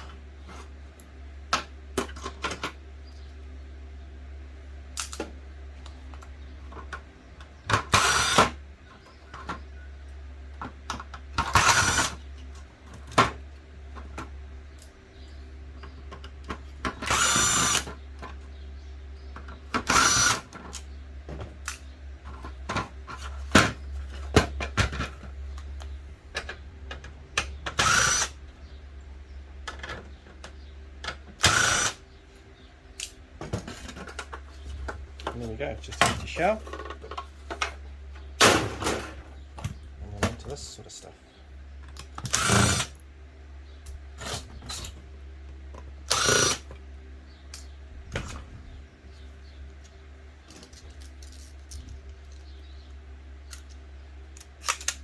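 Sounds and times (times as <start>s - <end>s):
power drill bursts: 7.9s - 8.5s, 11.5s - 12.2s, 17.0s - 17.9s, 19.9s - 20.5s, 27.8s - 28.4s, 31.4s - 32.0s, 42.3s - 43.0s, 46.1s - 46.7s.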